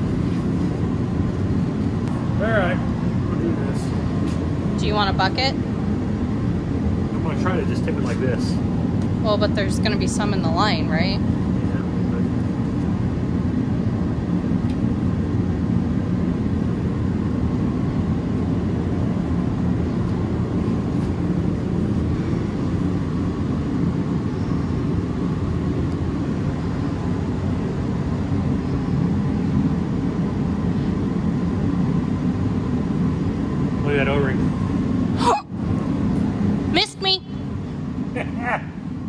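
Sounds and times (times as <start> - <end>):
faint steady whine: 0.0 - 39.0
low rumble of running machine: 0.0 - 39.0.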